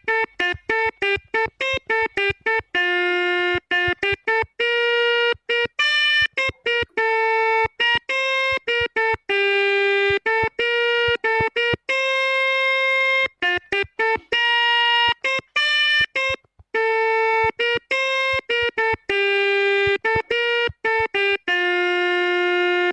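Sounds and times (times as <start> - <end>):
horn playing a melody: 0.0 - 22.9.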